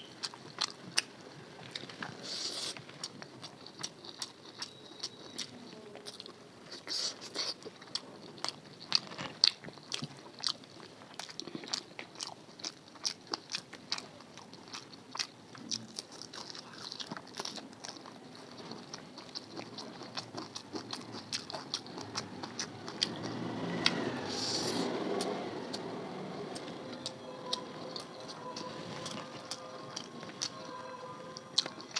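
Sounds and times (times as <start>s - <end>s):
person chewing crunchy food: 0.0s - 31.9s.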